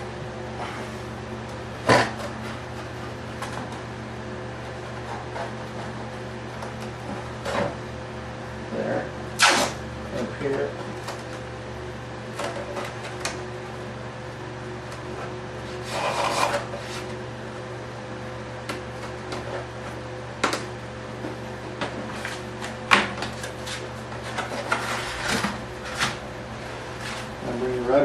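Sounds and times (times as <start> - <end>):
steady low hum: 0.0 - 28.0
scrape: 15.7 - 17.1, 23.6 - 26.1
hands rubbing and rustling tape: 22.0 - 26.2.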